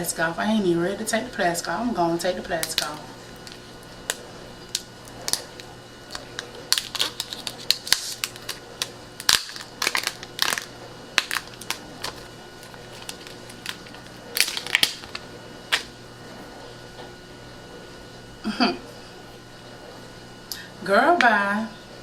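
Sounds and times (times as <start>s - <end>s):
plastic film crinkling: 2.6s - 15.9s.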